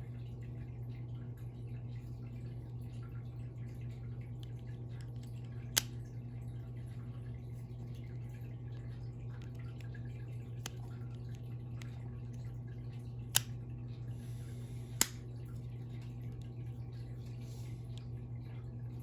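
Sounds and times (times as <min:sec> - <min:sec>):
steady low hum: 0:00.0 - 0:19.0
small handling clicks: 0:04.4 - 0:06.0, 0:13.3 - 0:13.6, 0:15.0 - 0:15.3.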